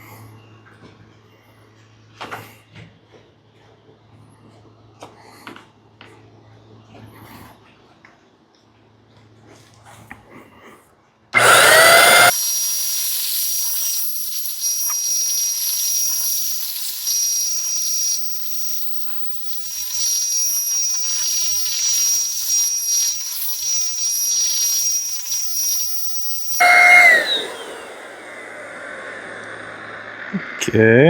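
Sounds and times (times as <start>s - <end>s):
electric paint sprayer whining: 11.4s - 30.8s
paint spray hissing: 12.3s - 25.8s.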